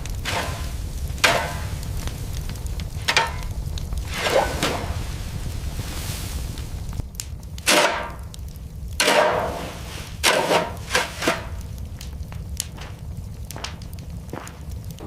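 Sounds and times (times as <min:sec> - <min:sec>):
sharp impacts: 0:00.0 - 0:05.7
steady low hum: 0:00.0 - 0:15.0.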